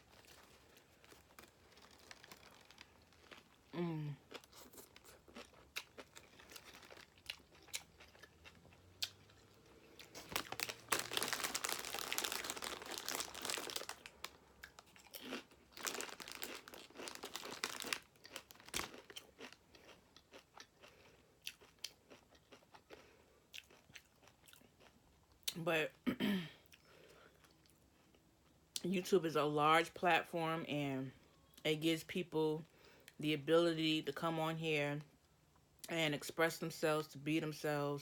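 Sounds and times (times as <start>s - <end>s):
chewing sandwich: 0.0s - 25.5s.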